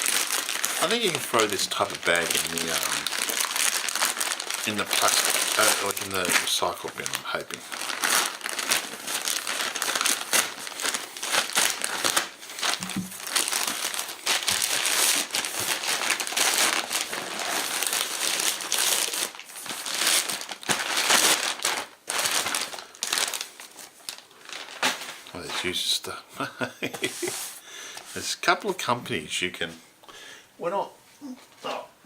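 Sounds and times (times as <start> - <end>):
plastic bag crinkling: 0.0 - 25.8.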